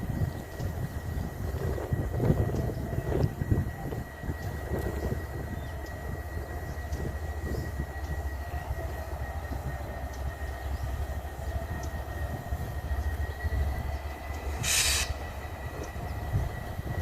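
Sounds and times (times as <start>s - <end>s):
diesel locomotive engine rumble: 0.0s - 17.0s
faint high whine: 0.1s - 17.0s
air hiss: 14.4s - 15.3s.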